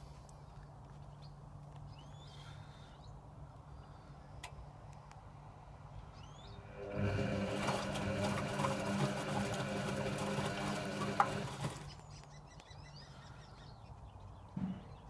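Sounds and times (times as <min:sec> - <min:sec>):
washing machine hum: 0:06.5 - 0:12.0
washing machine motor turning drum: 0:06.6 - 0:11.9.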